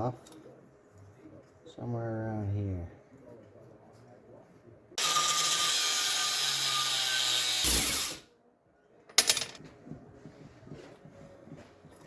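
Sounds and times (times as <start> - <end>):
power tool cutting steel: 5.0 - 8.2.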